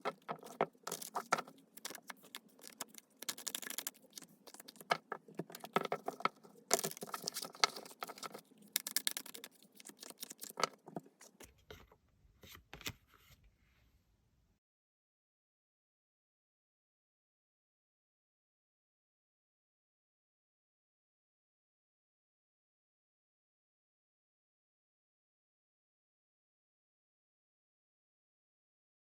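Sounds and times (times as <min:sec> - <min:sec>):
cards being shuffled: 0:00.0 - 0:11.5.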